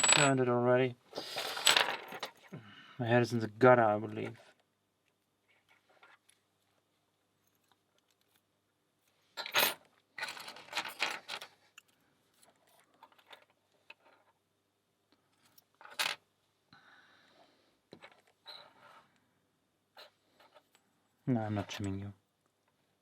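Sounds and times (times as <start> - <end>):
metal tools clinking: 0.0 - 0.4.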